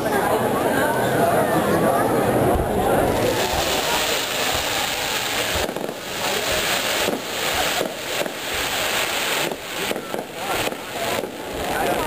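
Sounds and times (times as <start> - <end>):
fireworks crackling and bursting: 2.9 - 12.0.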